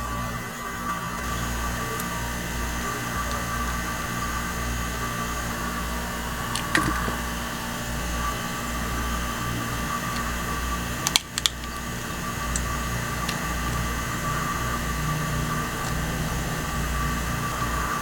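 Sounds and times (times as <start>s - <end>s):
steady mechanical hum: 0.0s - 18.0s.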